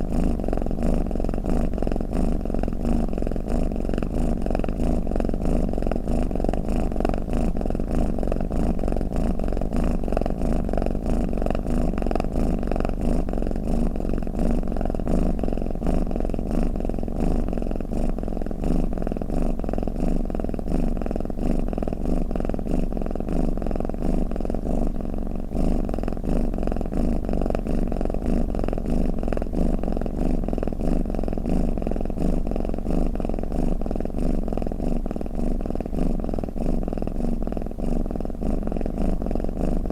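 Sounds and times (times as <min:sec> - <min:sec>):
cat purring: 0:00.0 - 0:39.9.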